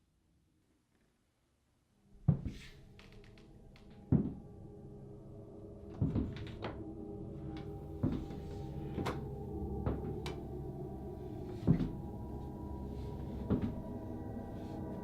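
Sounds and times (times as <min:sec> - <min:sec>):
low drone: 0:03.7 - 0:15.0.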